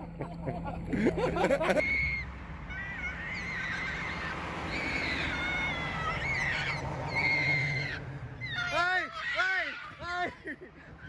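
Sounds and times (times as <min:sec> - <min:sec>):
steady low rumble: 0:00.0 - 0:04.6
gulls calling: 0:00.0 - 0:11.0.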